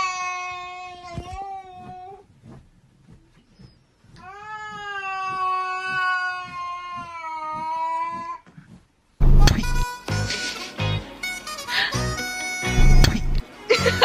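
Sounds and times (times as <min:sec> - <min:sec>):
loud music: 0:12.6 - 0:14.0.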